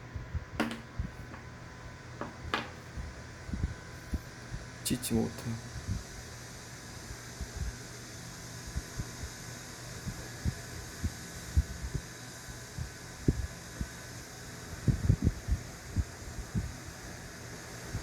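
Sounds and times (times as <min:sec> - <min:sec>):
dull knocks from handling tools: 0:00.6 - 0:00.9, 0:02.2 - 0:02.8.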